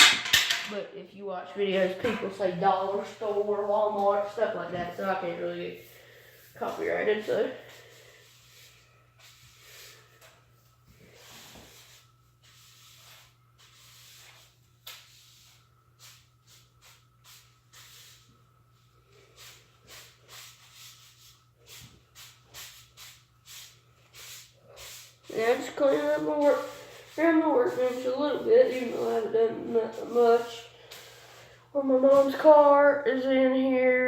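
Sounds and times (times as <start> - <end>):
steady low hum: 0.0 - 34.0
broom sweeping leaves: 11.0 - 18.3, 19.2 - 32.7.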